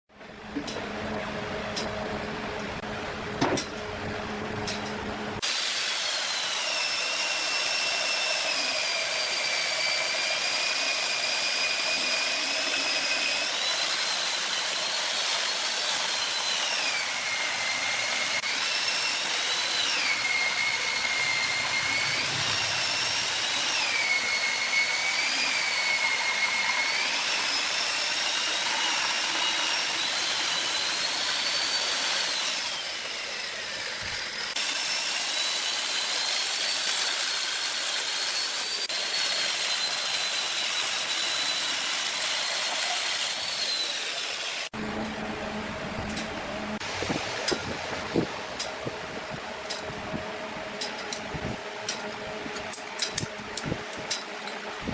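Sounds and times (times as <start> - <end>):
cutting tool hissing on wood: 5.4 - 44.8
wood lathe whining: 5.4 - 54.9.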